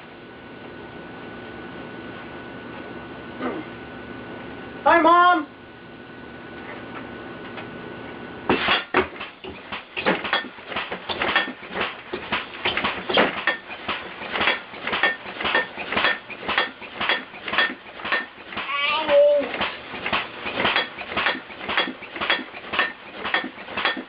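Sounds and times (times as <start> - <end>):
pneumatic cylinder knocking: 8.5 - 18.8, 19.5 - 24.0.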